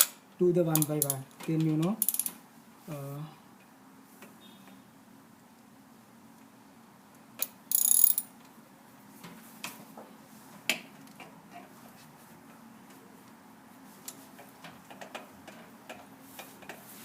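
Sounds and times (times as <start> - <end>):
ratchet wrench clicking: 2.0 - 2.3, 7.4 - 8.2.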